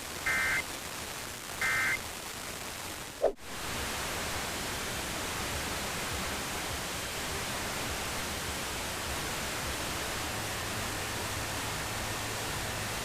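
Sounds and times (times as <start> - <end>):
radio static hiss: 0.0 - 4.0.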